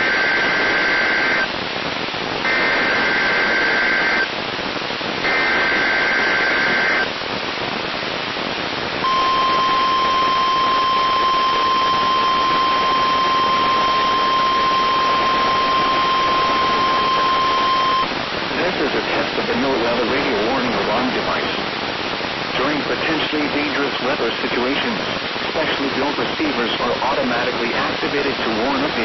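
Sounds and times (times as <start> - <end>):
steady alarm tone: 0.0 - 1.5, 2.5 - 4.3, 5.3 - 7.1, 9.0 - 18.2
radio hiss: 0.0 - 29.0
buzzy digital data bursts: 2.4 - 4.3, 5.2 - 7.1, 9.0 - 18.1.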